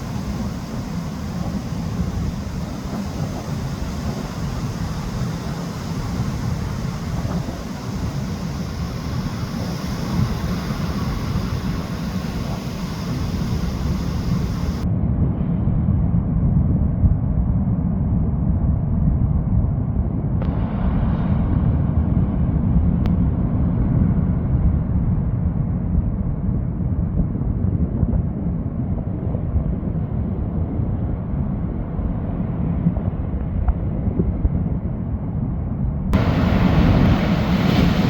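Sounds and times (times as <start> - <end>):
heavy surf: 0.0 - 14.8, 20.4 - 24.6, 36.2 - 38.0
wind buffeting microphone: 0.0 - 38.0.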